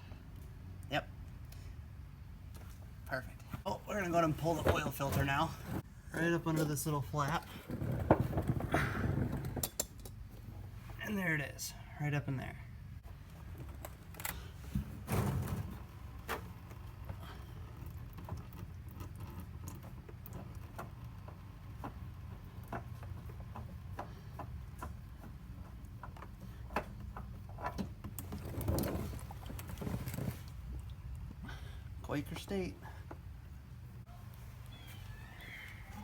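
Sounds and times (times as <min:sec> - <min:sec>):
tools clicking and knocking: 0:09.6 - 0:10.3.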